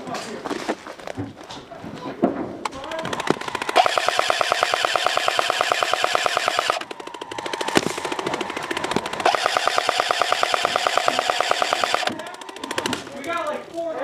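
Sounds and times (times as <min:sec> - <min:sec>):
airsoft gun full-auto bursts: 0:02.8 - 0:13.5.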